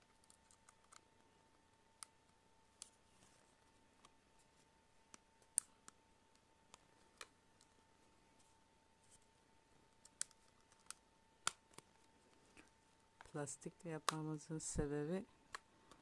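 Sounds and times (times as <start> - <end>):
faint high hum: 0.0 - 16.0.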